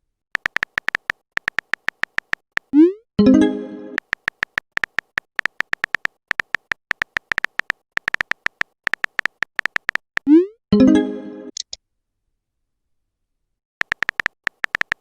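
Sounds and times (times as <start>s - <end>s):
phone keyboard typing clicks: 0.4s - 2.8s, 4.0s - 10.3s, 13.8s - 15.0s.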